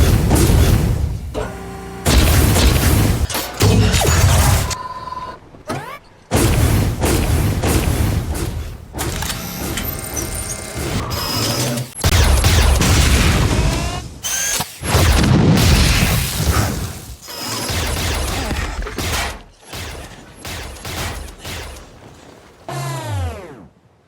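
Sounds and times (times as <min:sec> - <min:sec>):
mechanical servo whirring: 0:00.0 - 0:06.6, 0:08.4 - 0:12.8, 0:13.4 - 0:15.3, 0:16.2 - 0:21.6.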